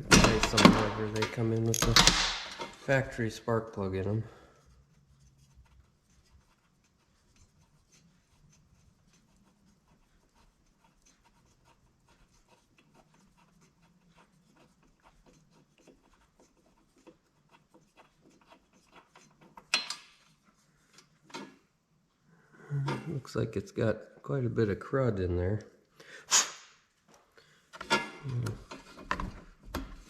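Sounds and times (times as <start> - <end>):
hand tools ticking and scraping: 0.0 - 21.6.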